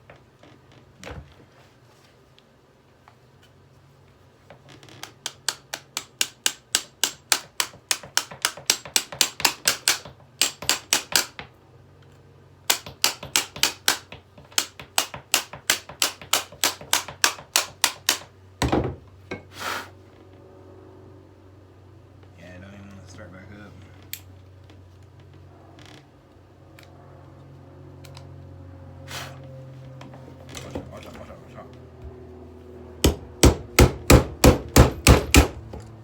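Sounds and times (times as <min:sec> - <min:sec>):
faint low hum: 0:18.6 - 0:36.0
hammer striking hairdryer: 0:33.0 - 0:35.8.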